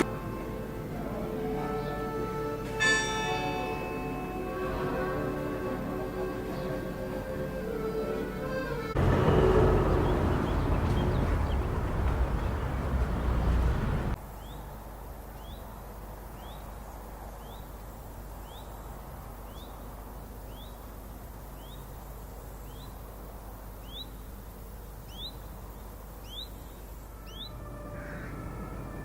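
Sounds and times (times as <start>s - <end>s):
bird calling rising note: 0.0s - 2.6s, 4.4s - 14.2s, 27.2s - 29.0s
loud dense noise: 0.0s - 14.2s, 27.1s - 29.0s.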